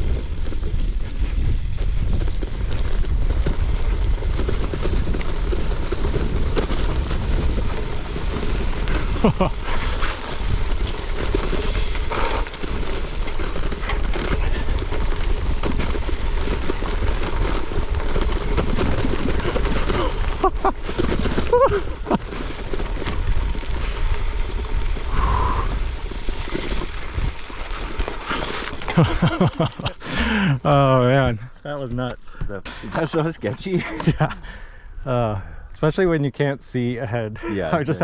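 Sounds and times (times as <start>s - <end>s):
wind buffeting microphone: 0.0s - 28.5s
bike rattling on rough trail: 0.0s - 34.8s.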